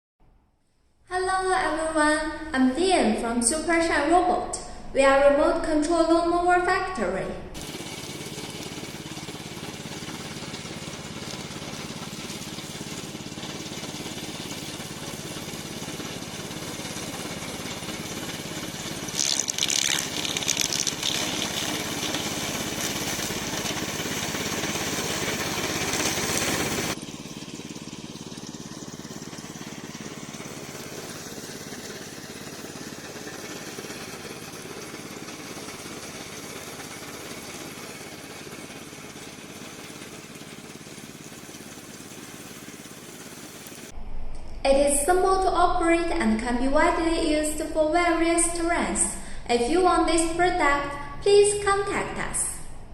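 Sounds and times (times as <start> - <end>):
mower engine droning: 7.4 - 44.0.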